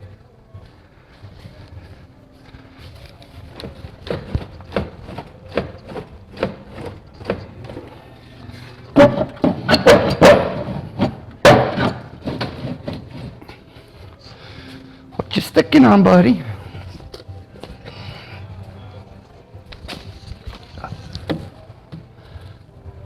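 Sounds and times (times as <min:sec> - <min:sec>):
sharp metal bangs: 0:09.0 - 0:12.1.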